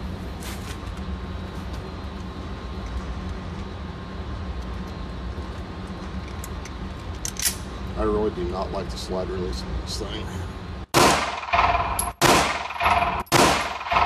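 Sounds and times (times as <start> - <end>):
pistol clicks being handled: 5.9 - 7.6.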